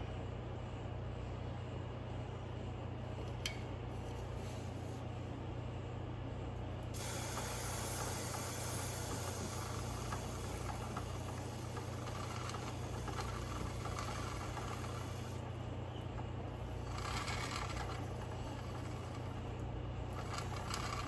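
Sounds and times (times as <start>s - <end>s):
steady low hum: 0.0s - 21.0s
aerosol spray can hissing: 7.0s - 11.2s.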